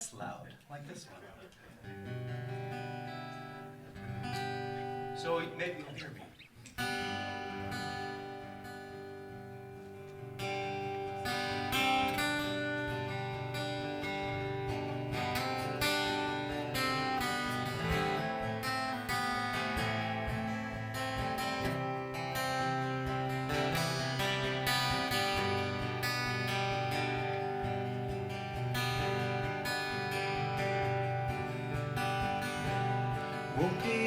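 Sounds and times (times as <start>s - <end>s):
acoustic guitar strumming: 1.8s - 34.0s
live band playing folk music: 10.4s - 34.0s.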